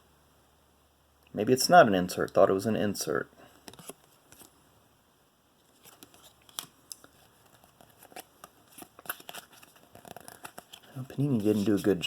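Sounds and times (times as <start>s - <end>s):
cards rustling: 3.6s - 4.6s, 5.6s - 12.0s
cards clicking and flicking: 5.8s - 11.8s.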